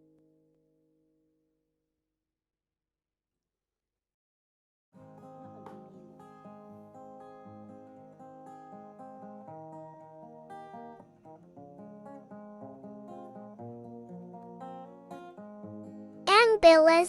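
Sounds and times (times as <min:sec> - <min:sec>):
acoustic guitar melody: 0:05.0 - 0:17.0.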